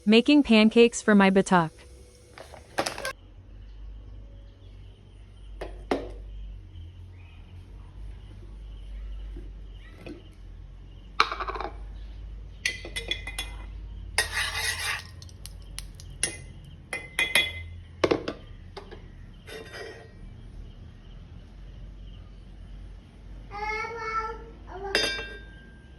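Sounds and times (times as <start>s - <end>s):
utensils clinking and scraping: 2.4s - 3.2s, 14.2s - 16.4s.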